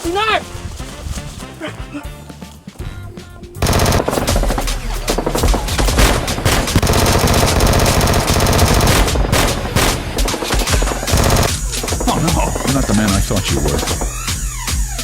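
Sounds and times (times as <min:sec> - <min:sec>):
background music: 0:00.0 - 0:15.0
rapid automatic gunfire: 0:03.6 - 0:15.0.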